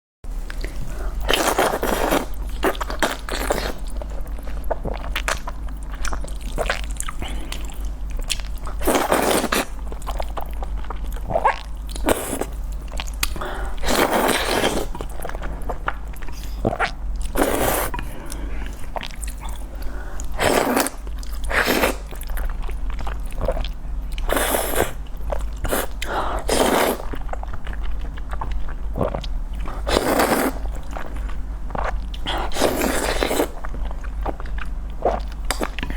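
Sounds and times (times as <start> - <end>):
low steady hum: 0.3 - 35.9
chewing: 0.4 - 35.9
slurping noodles: 8.8 - 9.6, 16.3 - 18.8, 19.4 - 22.1, 24.2 - 25.0, 25.6 - 27.2, 29.0 - 30.8, 32.2 - 33.6.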